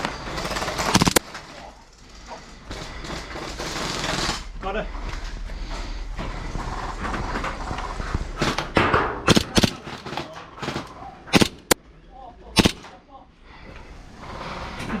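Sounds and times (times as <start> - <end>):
gel blaster shots: 0.9 - 1.2, 9.3 - 10.0, 11.3 - 11.8, 12.6 - 12.9
steady rustling: 9.3 - 11.8.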